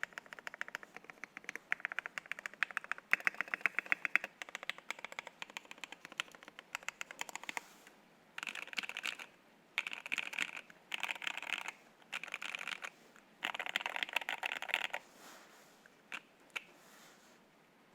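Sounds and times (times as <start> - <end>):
mechanical keyboard typing: 0.0 - 7.6, 8.4 - 15.0.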